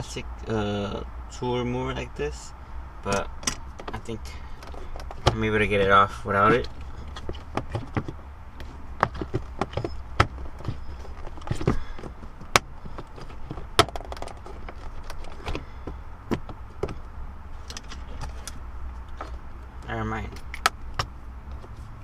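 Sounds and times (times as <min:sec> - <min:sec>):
plastic trim clicking and knocking: 0:09.0 - 0:15.6.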